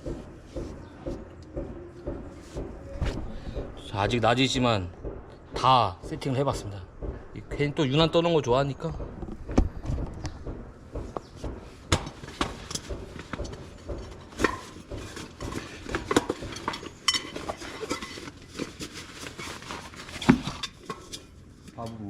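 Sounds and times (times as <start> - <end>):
camping gear clinking and knocking: 8.8 - 22.0.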